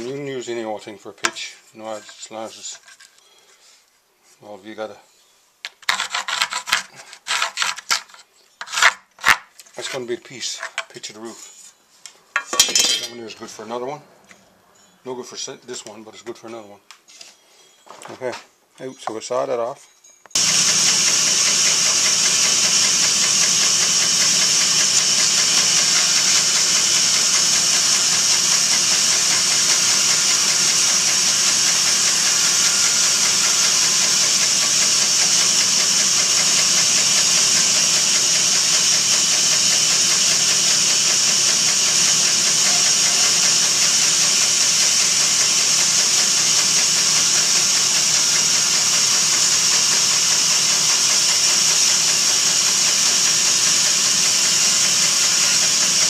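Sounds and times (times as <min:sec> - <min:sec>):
power saw cutting wood: 0:20.4 - 0:56.0.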